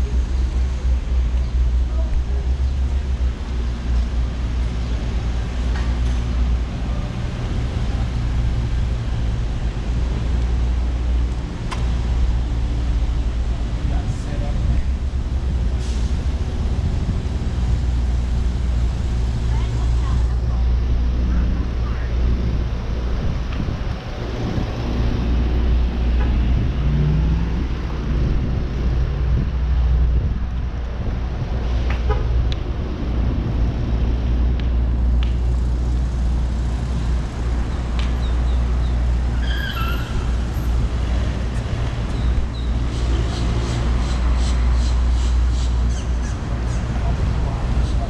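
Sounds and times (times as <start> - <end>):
car engines passing: 0.0 - 48.0.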